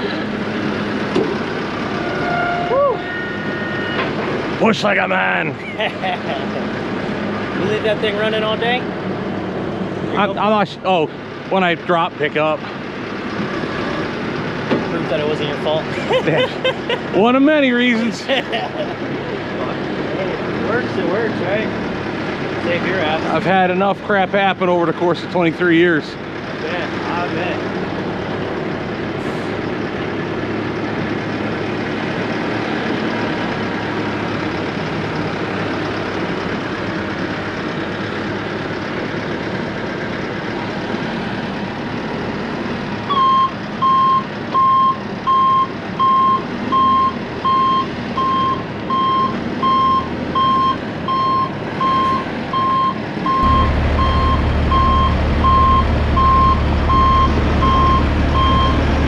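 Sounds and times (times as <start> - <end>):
deep engine drone: 0.0 - 59.0
diesel machine running: 0.0 - 59.0
reversing alarm beeping: 2.0 - 4.2, 43.1 - 58.9.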